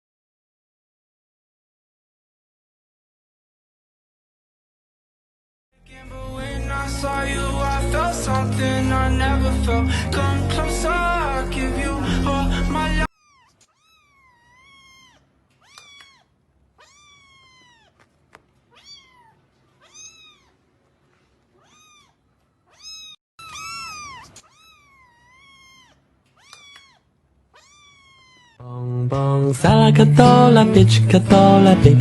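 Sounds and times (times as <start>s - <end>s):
music: 5.8s - 13.1s, 28.8s - 32.0s
cat meowing: 13.1s - 20.7s, 21.5s - 28.6s.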